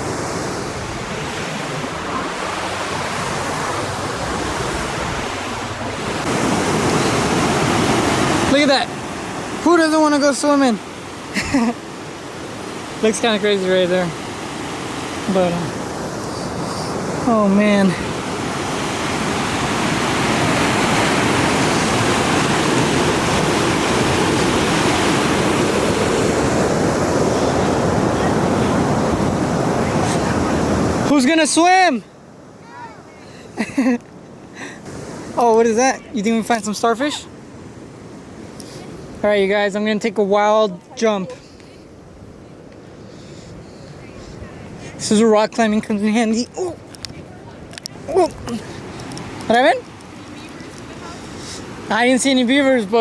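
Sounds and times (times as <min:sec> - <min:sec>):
river water rushing over rocks: 0:00.0 - 0:31.9.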